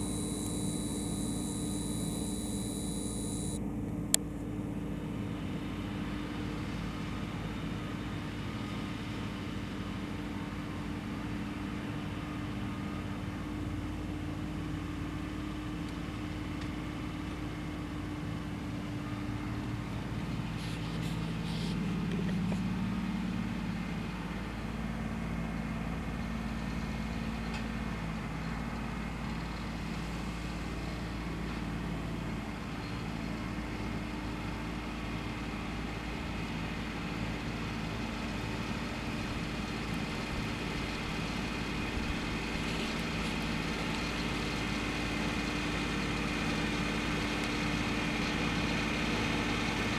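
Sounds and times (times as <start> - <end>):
tractor engine running: 0.0 - 3.6.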